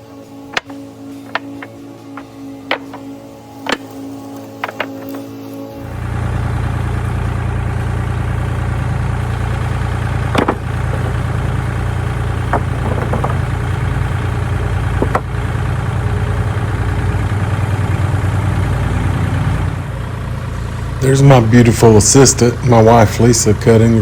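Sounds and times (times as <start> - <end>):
lawn mower engine running: 0.0 - 24.0
sharp knocks: 0.5 - 5.2, 10.3 - 11.4, 12.5 - 13.5, 15.0 - 15.3.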